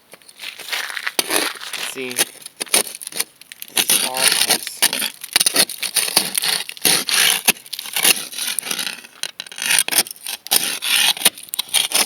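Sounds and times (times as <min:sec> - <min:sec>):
ice scraper scraping ice: 0:00.4 - 0:12.0.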